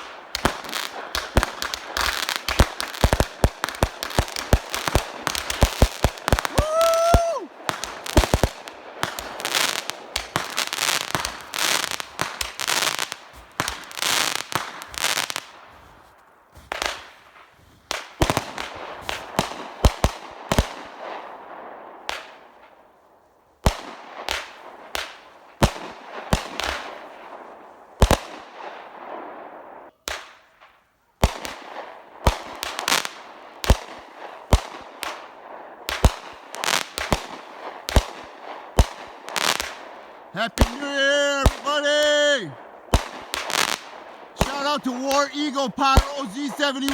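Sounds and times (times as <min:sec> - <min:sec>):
fireworks crackling: 0:00.0 - 0:20.0, 0:35.9 - 0:46.9
fireworks bangs: 0:00.4 - 0:15.9, 0:38.8 - 0:46.9.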